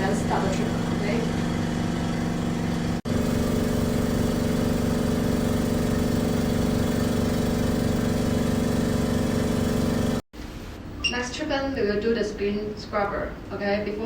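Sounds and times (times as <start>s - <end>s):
compressor motor hum: 0.0s - 10.3s.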